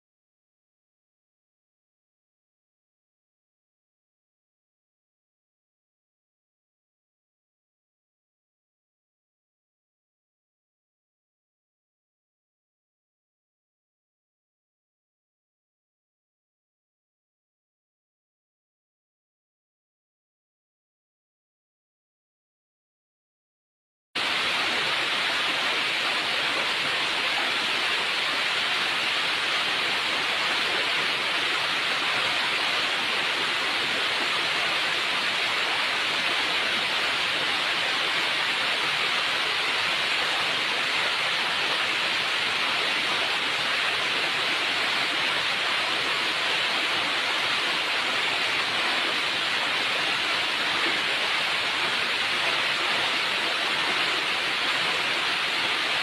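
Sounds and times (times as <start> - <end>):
rushing water: 24.2 - 56.0.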